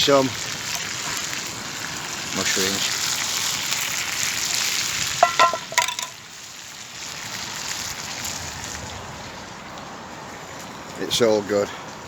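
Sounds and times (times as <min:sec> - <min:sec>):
food sizzling in a pan: 0:00.0 - 0:08.8.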